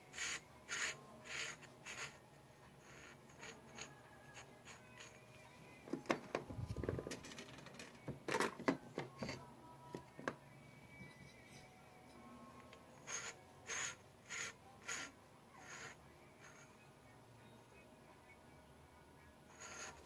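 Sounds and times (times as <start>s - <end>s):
metal parts clicking and knocking: 6.0s - 9.4s.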